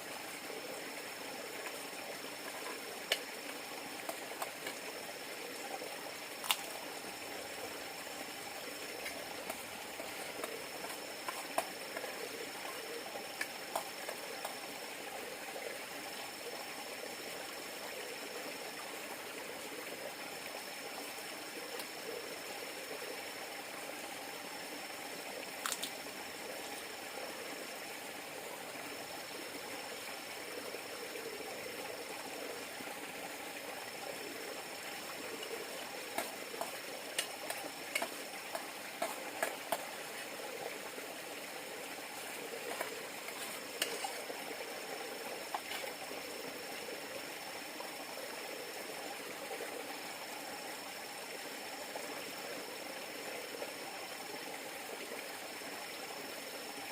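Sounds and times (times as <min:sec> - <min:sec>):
river water flowing: 0:00.0 - 0:56.9.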